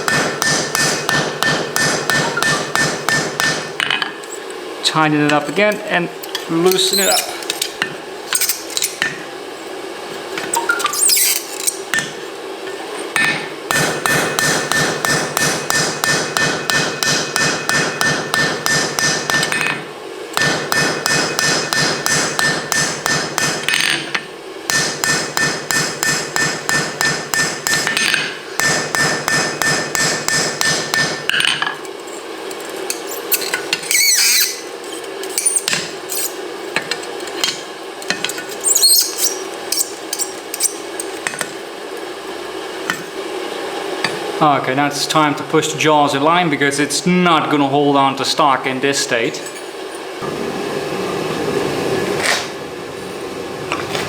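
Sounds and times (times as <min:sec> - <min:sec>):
hammer striking steel on anvil: 0:00.0 - 0:04.2, 0:13.2 - 0:19.8, 0:20.4 - 0:31.9.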